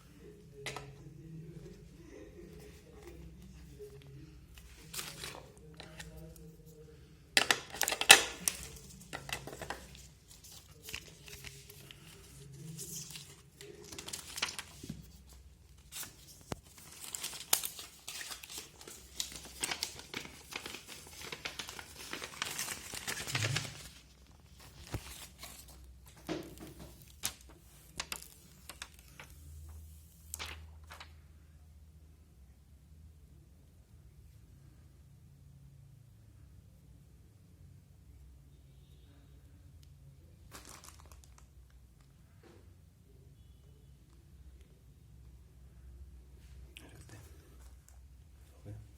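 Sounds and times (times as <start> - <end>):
packaging crinkling and tearing: 7.5 - 25.8, 40.5 - 41.5.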